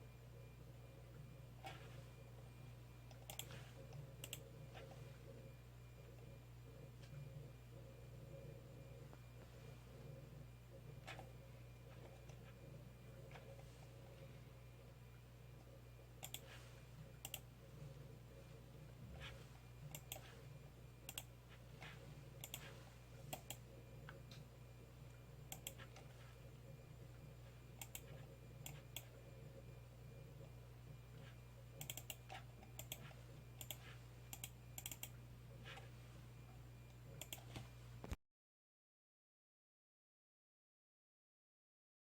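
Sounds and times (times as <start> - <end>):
steady low hum: 0.0 - 38.2
mouse and keyboard clicks: 3.1 - 4.9, 16.2 - 16.5, 17.2 - 17.4, 19.9 - 20.3, 21.1 - 22.7, 25.5 - 26.1, 27.8 - 29.1, 31.8 - 35.8, 37.2 - 37.7.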